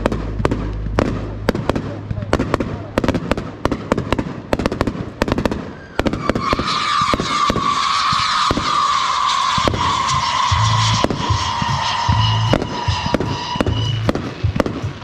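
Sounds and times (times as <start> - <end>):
fireworks bangs: 0.0 - 15.0
hissing firework whistle: 5.6 - 15.0.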